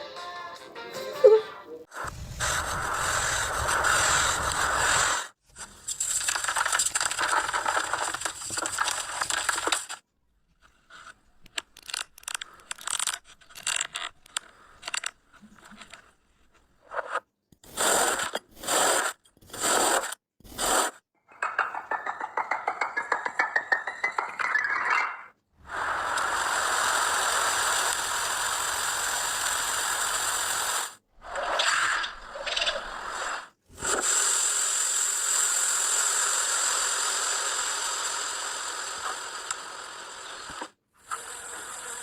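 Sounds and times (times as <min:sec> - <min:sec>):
small clicks: 0:11.0 - 0:16.2.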